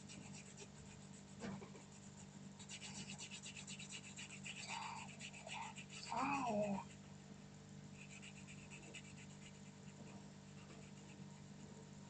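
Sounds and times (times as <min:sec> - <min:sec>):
pencil scratching on cardboard: 0:00.0 - 0:07.1, 0:08.0 - 0:11.7.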